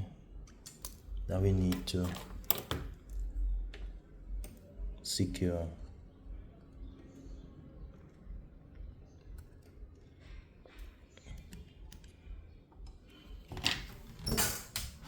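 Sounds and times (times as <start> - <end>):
small tools clicking and tapping: 0.5 - 3.2
handling noises: 1.6 - 3.2.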